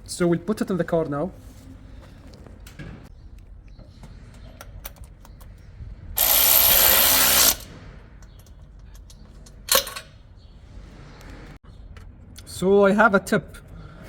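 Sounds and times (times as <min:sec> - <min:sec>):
power tool running: 0:06.2 - 0:07.7.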